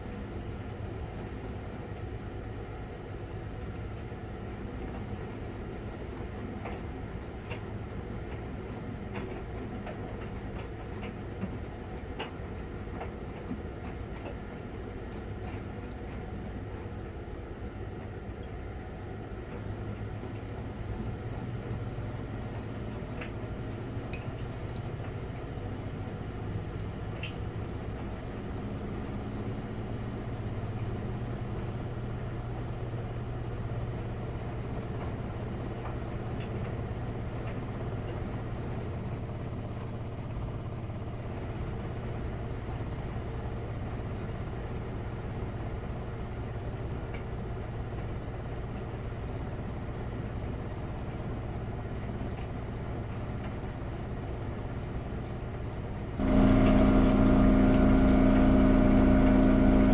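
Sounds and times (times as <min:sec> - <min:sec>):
washing machine humming: 0:00.0 - 0:59.9
louder multi-tone humming: 0:56.2 - 0:59.9.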